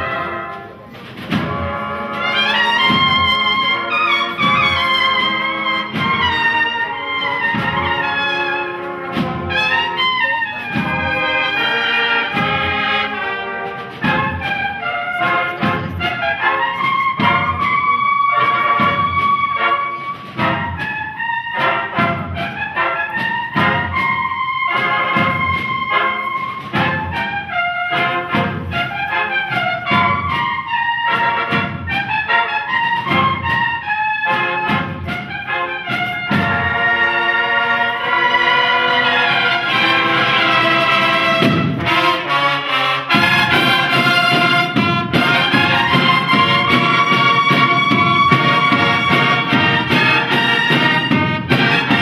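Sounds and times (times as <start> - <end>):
cornets playing a melody: 0.0 - 52.0
drum beat: 0.0 - 52.0.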